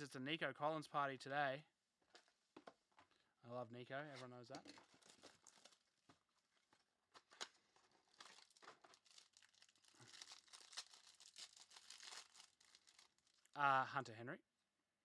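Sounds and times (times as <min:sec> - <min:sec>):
wrapper crinkling and tearing: 0:04.5 - 0:06.0, 0:07.2 - 0:13.6.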